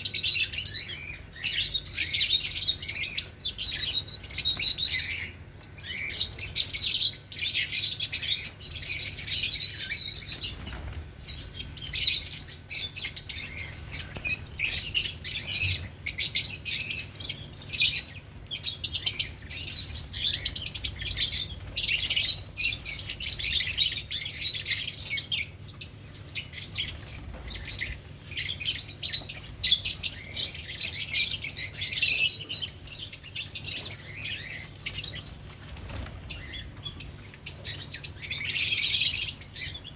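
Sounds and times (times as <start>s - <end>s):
lovebirds chirping: 0.0s - 39.9s.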